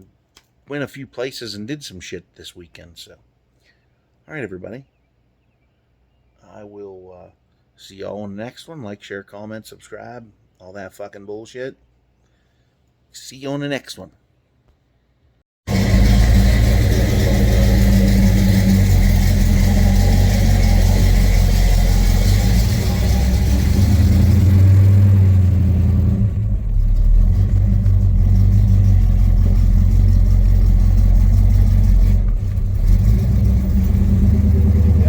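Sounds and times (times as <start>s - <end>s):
car engine running: 15.7s - 35.0s.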